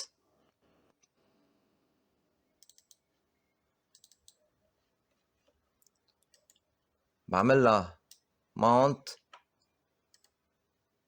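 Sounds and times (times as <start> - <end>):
computer mouse clicks: 2.6 - 3.0, 3.9 - 4.4, 5.8 - 6.7, 9.3 - 10.4.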